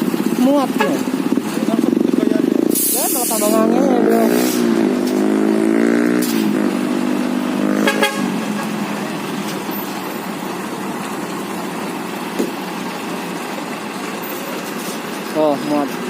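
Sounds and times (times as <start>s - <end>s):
traffic engine noise: 0.0s - 16.0s
vehicle horn: 0.7s - 1.2s, 7.6s - 8.8s.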